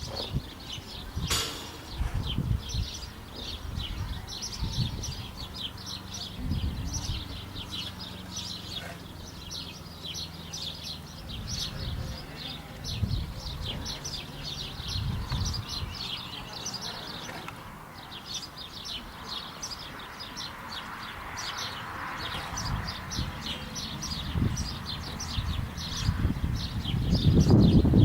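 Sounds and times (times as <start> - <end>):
small birds chirping: 0.0 - 28.0
low thuds: 1.2 - 3.6.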